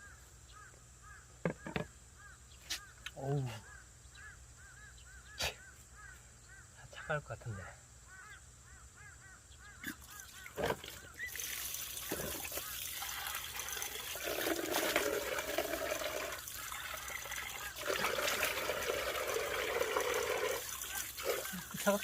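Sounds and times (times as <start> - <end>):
shower water splashing on person: 10.1 - 22.0.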